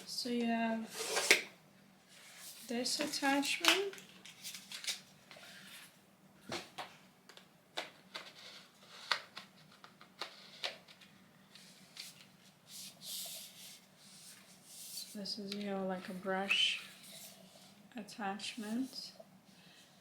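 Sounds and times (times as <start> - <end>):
packaging rustling: 2.6 - 6.0.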